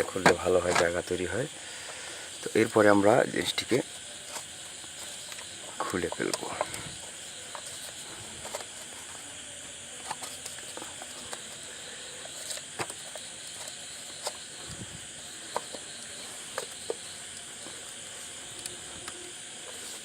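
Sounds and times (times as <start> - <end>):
steady background hiss: 0.0 - 20.0.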